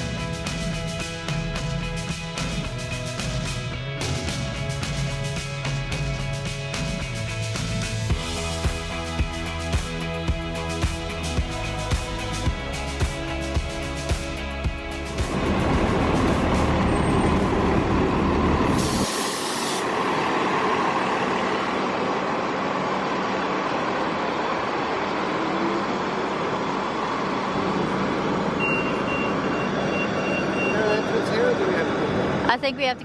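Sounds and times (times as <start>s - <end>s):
large vehicle engine rumbling: 0.0s - 19.1s, 19.9s - 33.0s
faint thin beep: 28.6s - 31.1s.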